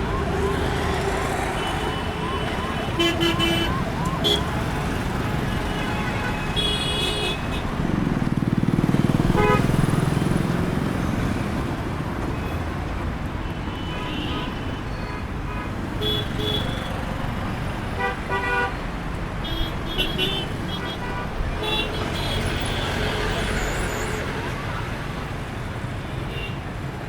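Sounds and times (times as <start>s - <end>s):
traffic rumble: 0.0s - 27.0s
car horn toots: 9.4s - 9.7s.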